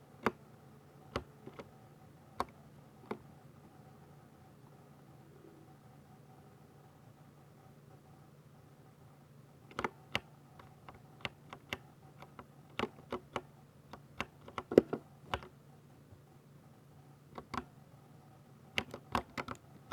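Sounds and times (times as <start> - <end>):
mechanical keyboard typing: 9.7 - 15.6, 17.3 - 17.8, 18.7 - 19.9.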